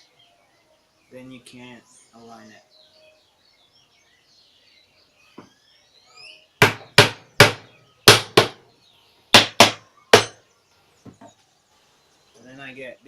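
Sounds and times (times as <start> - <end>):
faint bird chirps: 0.0 - 6.6, 8.7 - 13.0
hammer tapping on wood: 6.6 - 8.6, 9.4 - 10.4.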